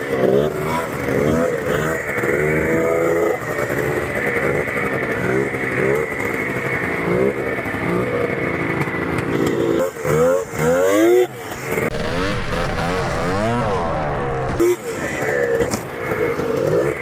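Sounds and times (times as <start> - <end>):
snowmobile engine revving: 9.8 - 15.5.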